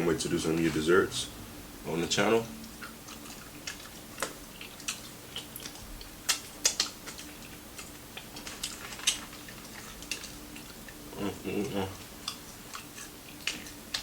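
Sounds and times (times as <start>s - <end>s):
crunchy chewing: 2.6s - 14.0s.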